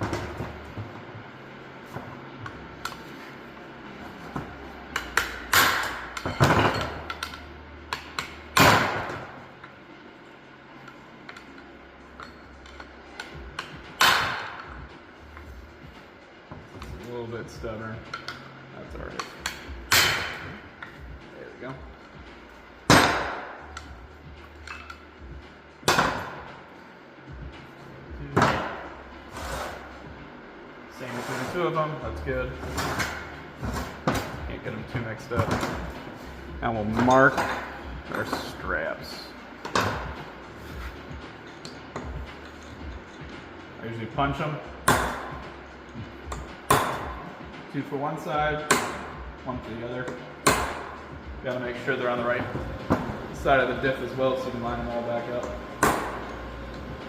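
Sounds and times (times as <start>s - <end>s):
hammer striking steel: 19.2s - 20.6s, 22.9s - 23.9s, 46.3s - 47.3s, 48.6s - 49.3s, 50.1s - 51.0s, 55.4s - 56.4s.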